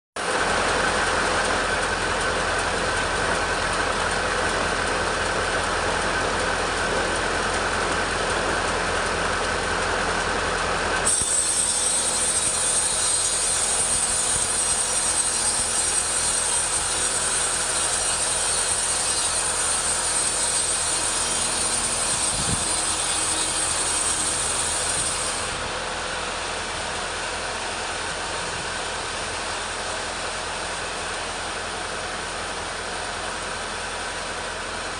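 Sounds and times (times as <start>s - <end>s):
chainsaw cutting wood: 11.0s - 25.6s.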